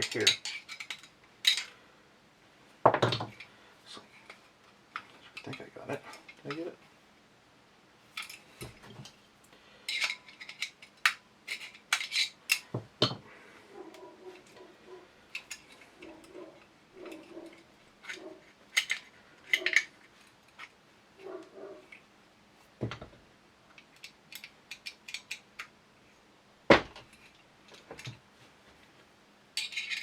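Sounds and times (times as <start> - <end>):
metal parts clicking and clinking: 0.0 - 1.8, 4.1 - 6.8, 8.1 - 9.2, 9.8 - 22.1, 23.7 - 25.8, 27.0 - 28.2, 29.5 - 30.0.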